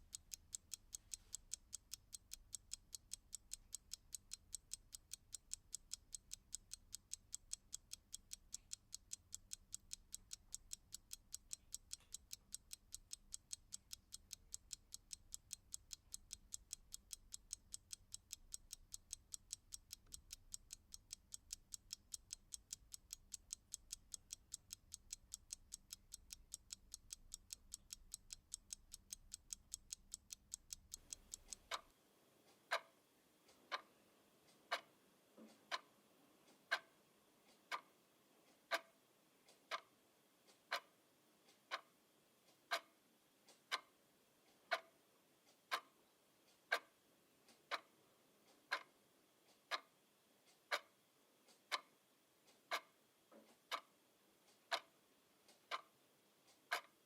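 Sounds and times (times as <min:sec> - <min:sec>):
clock ticking: 0:00.0 - 0:31.9, 0:32.5 - 0:33.9, 0:34.5 - 0:35.9, 0:36.5 - 0:37.9, 0:38.5 - 0:38.9, 0:39.5 - 0:39.9, 0:40.5 - 0:40.9, 0:41.5 - 0:41.9, 0:42.7 - 0:42.9, 0:43.5 - 0:43.9, 0:44.5 - 0:44.9, 0:45.5 - 0:46.9, 0:47.5 - 0:47.9, 0:48.5 - 0:48.9, 0:49.5 - 0:49.9, 0:50.5 - 0:50.9, 0:51.5 - 0:51.9, 0:52.5 - 0:53.9, 0:54.5 - 0:55.9, 0:56.5 - 0:57.0.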